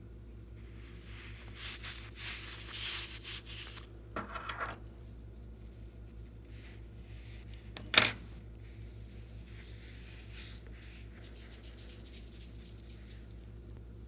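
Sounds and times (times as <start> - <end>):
soft crackly rustling of slime: 0.8 - 3.9, 5.5 - 7.5.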